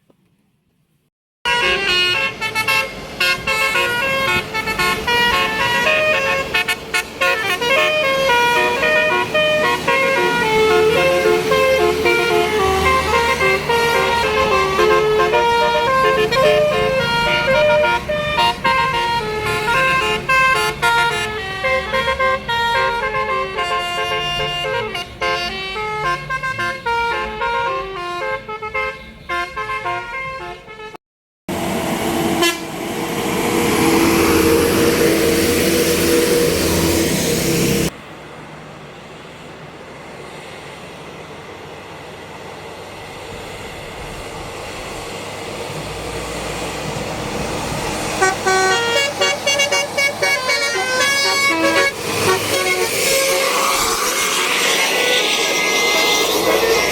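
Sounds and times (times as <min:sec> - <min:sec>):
multi-tone bus horn tune: 0:01.4 - 0:37.9, 0:46.6 - 0:56.9
loud horn chord: 0:01.5 - 0:28.6, 0:31.5 - 0:37.9, 0:48.0 - 0:56.9
engine rumble: 0:31.5 - 0:56.9
rushing noise: 0:31.5 - 0:56.9.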